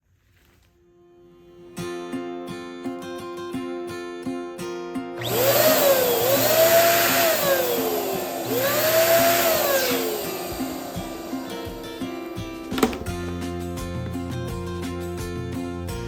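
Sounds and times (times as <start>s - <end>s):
plucked guitar music: 1.8s - 5.2s, 10.1s - 15.7s
electric balloon pump running: 5.2s - 13.4s.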